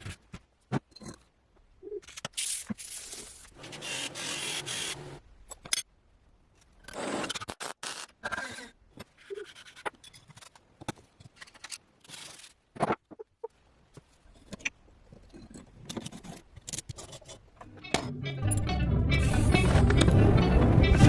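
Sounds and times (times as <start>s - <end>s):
metal parts clicking and tapping: 14.3s - 18.1s.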